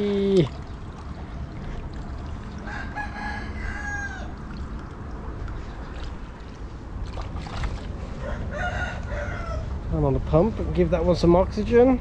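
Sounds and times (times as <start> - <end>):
rooster crowing: 2.6 - 4.4, 8.2 - 9.7.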